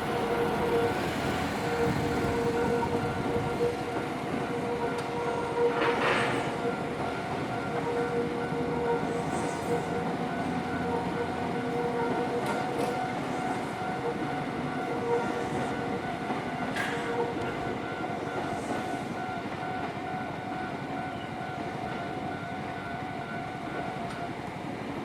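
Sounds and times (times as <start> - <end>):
level-crossing warning bell: 0.0 - 25.0
train wheels rumbling on rail: 0.0 - 25.0.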